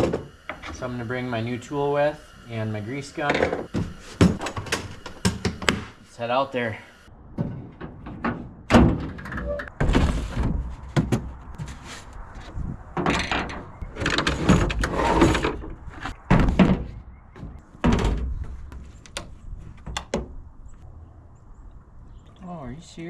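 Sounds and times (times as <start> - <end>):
tools knocking and clunking: 3.3 - 5.8.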